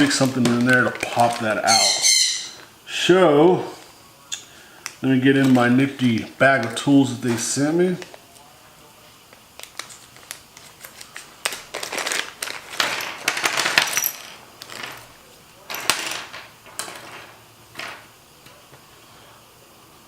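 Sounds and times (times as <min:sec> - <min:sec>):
small tools clinking: 0:11.7 - 0:15.1.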